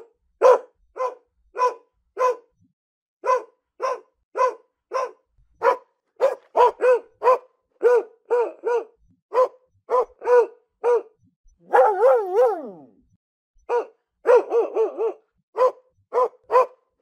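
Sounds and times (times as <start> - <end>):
dog barking: 0.0 - 2.6, 3.2 - 13.0, 13.6 - 17.0
dog wavering cry: 11.7 - 13.0.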